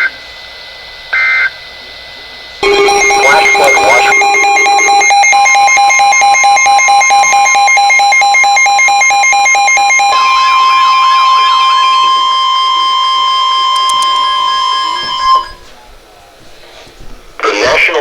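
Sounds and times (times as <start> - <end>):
steady alert tone: 2.6 - 10.2
pulsing electronic beeping: 2.6 - 10.4.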